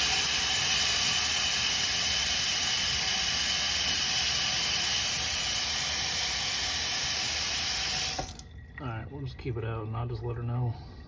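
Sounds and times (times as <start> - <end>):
faucet water running into sink: 0.0 - 8.8.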